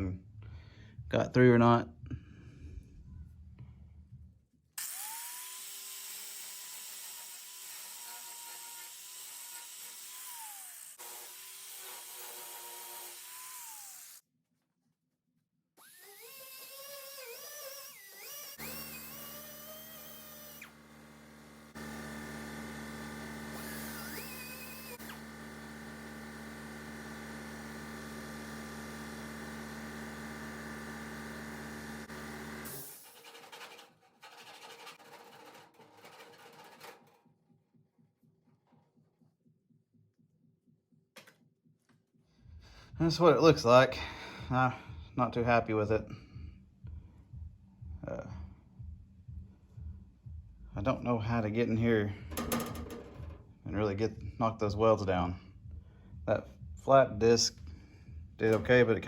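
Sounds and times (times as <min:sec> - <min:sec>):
angle grinder grinding metal: 0:04.8 - 0:14.2, 0:15.8 - 0:37.0.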